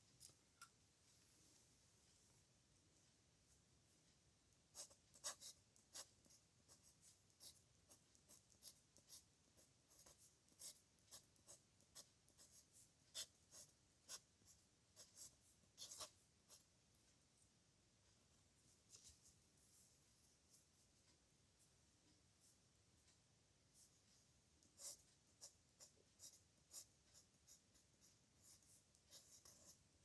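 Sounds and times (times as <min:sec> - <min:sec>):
pen scratching on paper: 0:04.7 - 0:16.7, 0:24.6 - 0:30.0.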